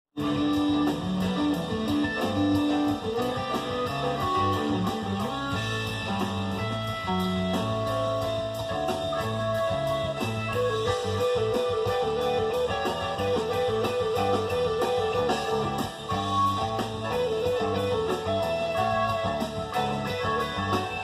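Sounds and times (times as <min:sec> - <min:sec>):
guitar-led instrumental music: 0:00.1 - 0:21.0.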